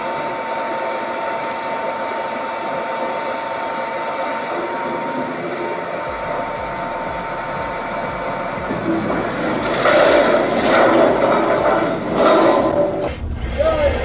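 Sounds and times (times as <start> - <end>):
low irregular thumping: 6.1 - 14.0.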